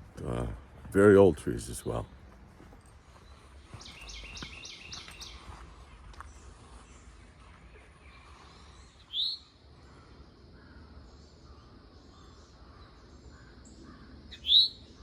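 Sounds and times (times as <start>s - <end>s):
faint birds chirping: 0.0s - 15.0s
bird upward-sweeping calls: 8.9s - 9.5s, 14.3s - 15.0s.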